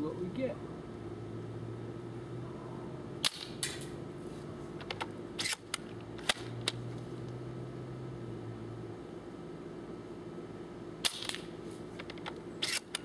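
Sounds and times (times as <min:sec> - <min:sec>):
airsoft rifle shots and bolt clicks: 0:03.2 - 0:03.9, 0:05.4 - 0:06.8, 0:11.0 - 0:13.0.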